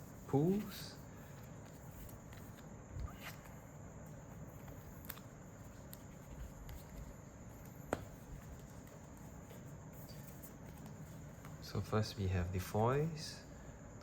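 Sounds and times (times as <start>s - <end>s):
low room noise: 0.0s - 14.0s
trading cards tapping: 4.6s - 11.6s.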